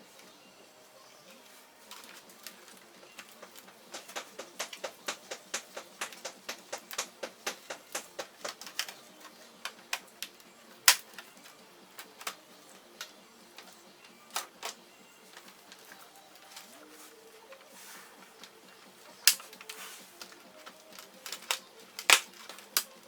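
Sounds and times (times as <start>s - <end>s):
laptop parts clicking and tapping: 1.9s - 12.4s, 18.4s - 23.0s.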